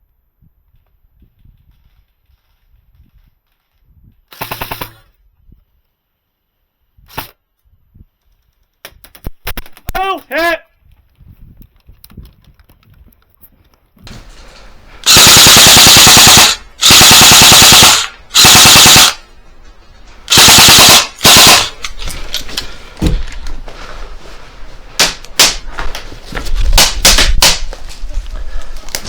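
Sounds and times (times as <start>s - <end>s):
airsoft gun full auto bursts: 15.0s - 19.3s, 20.3s - 21.9s.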